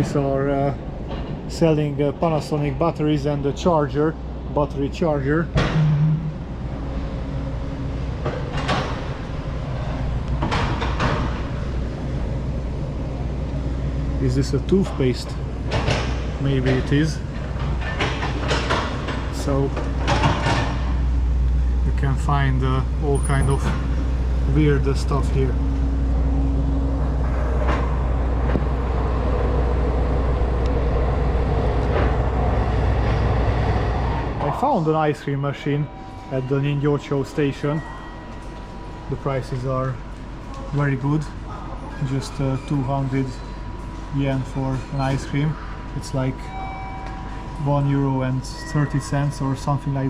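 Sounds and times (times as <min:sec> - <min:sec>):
low street rumble: 0:00.0 - 0:50.0
street din: 0:05.6 - 0:06.6.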